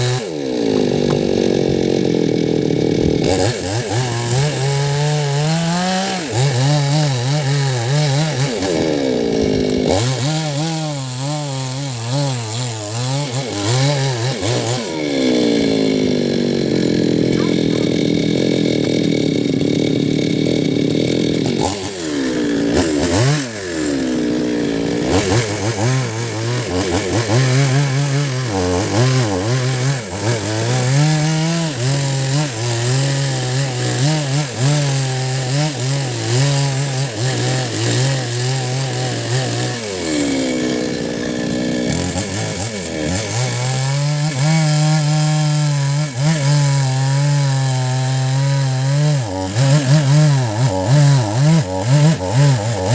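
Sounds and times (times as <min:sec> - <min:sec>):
chainsaw cutting wood: 0:00.0 - 0:52.9.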